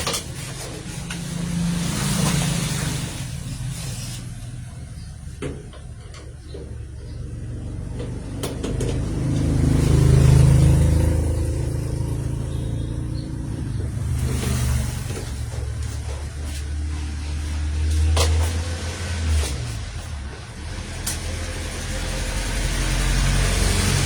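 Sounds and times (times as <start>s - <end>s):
low mechanical rumble: 0.0s - 24.0s.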